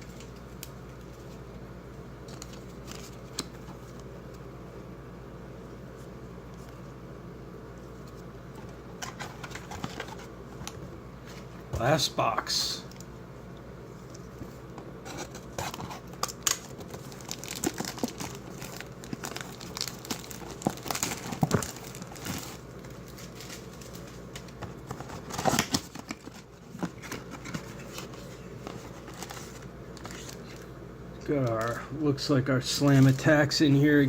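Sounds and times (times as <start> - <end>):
packaging crinkling and rustling: 0.0 - 1.6, 2.2 - 4.4, 7.8 - 11.5, 13.9 - 30.8
packaging tearing: 15.1 - 30.6.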